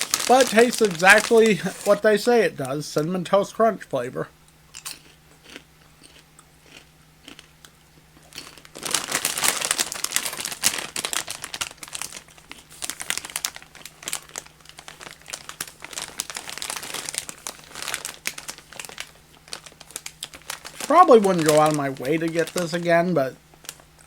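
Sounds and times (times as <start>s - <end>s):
popcorn bag crinkling: 0.0s - 3.6s, 8.1s - 24.0s.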